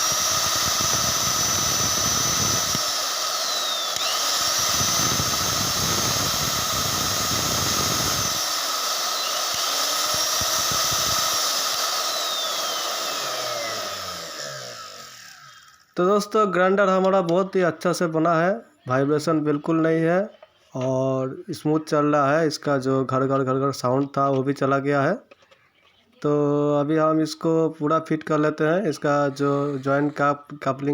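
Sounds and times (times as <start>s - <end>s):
mixer grinder motor whine: 0.0s - 16.0s.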